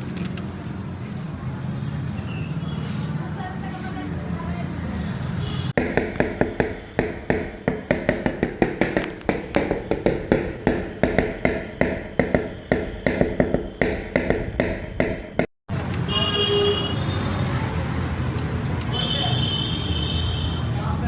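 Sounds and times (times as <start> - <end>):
hammer tapping on metal: 5.8 - 15.6.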